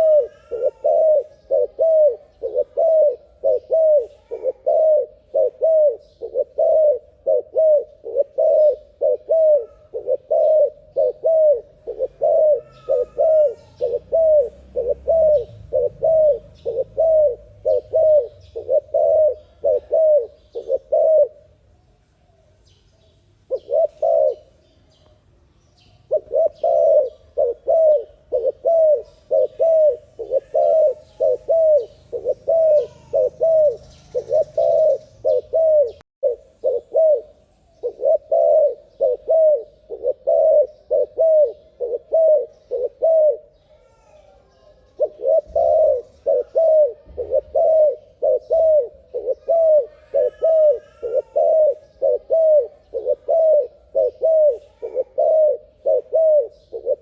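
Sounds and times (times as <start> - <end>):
dove cooing: 0.0 - 21.6, 23.5 - 24.6, 26.0 - 57.0
small birds chirping: 0.0 - 57.0.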